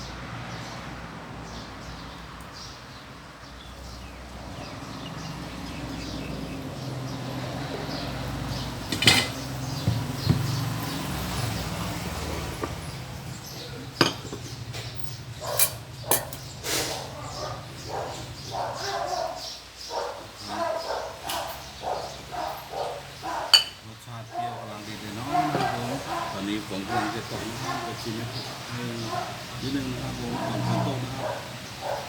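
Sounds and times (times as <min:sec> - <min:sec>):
kitchenware clinking: 0:08.7 - 0:11.4, 0:12.1 - 0:17.0, 0:23.3 - 0:23.9, 0:25.2 - 0:27.2.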